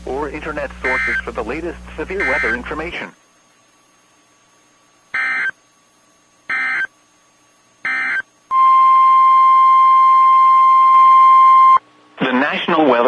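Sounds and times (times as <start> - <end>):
raspy data bursts: 0.1 - 2.9, 5.1 - 5.6, 6.5 - 6.9, 7.8 - 8.2
steady alarm tone: 0.8 - 1.4, 2.0 - 2.8, 5.1 - 5.6, 6.5 - 6.9, 7.8 - 11.8.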